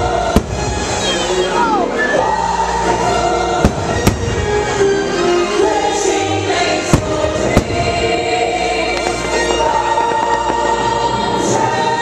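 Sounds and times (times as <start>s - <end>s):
music with choir singing: 0.0s - 12.0s
fireworks bangs: 3.6s - 4.5s, 6.8s - 11.6s.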